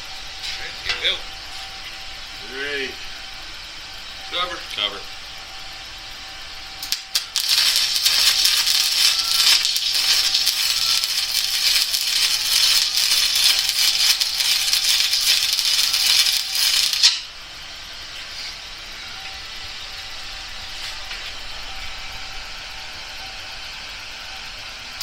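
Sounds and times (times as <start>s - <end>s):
crackling welding arc: 6.8s - 17.4s.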